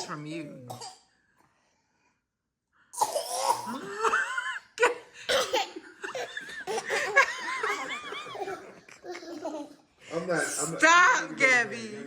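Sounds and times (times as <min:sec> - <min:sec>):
children coughing: 0:03.0 - 0:09.2
toddlers laughing and giggling: 0:05.7 - 0:09.8.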